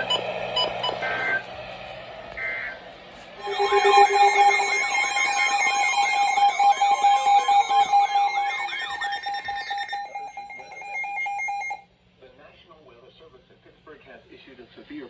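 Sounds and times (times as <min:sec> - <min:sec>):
steady beeping tone: 0:00.0 - 0:01.5, 0:03.4 - 0:11.8
warbling siren-like alert tone: 0:03.4 - 0:11.8.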